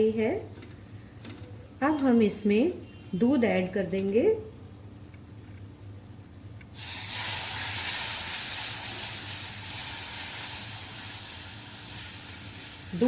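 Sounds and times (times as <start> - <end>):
milk sizzling in hot fat: 6.7 - 13.0.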